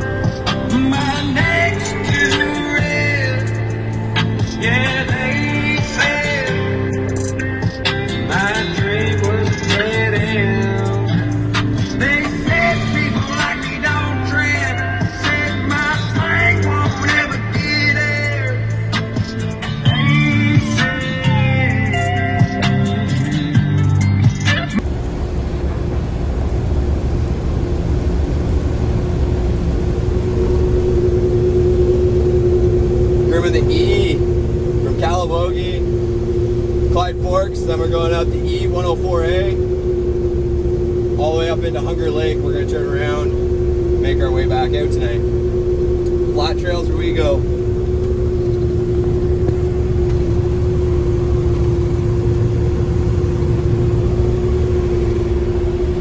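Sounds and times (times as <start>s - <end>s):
engine rumbling steadily: 24.8s - 56.0s
steady hum: 24.8s - 56.0s.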